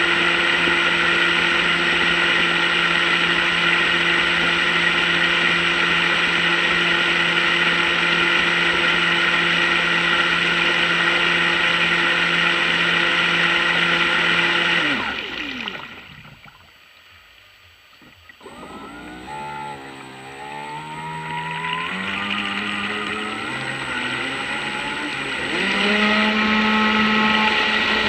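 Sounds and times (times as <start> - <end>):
electric motor whine: 0.0 - 16.3, 18.0 - 28.0.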